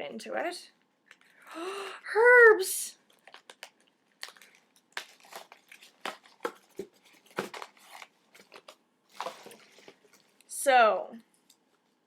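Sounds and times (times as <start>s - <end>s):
packets crinkling and rustling: 3.1s - 10.4s.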